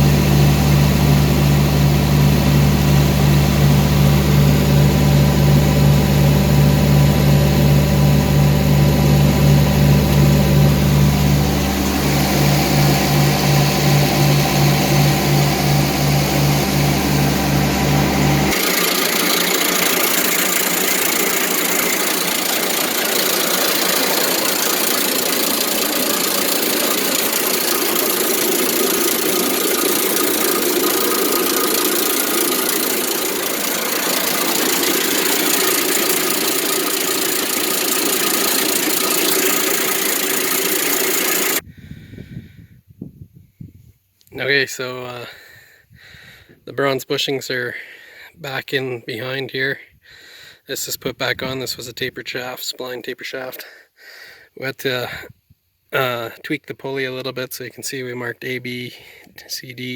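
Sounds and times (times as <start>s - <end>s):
engine idling: 0.0s - 41.7s.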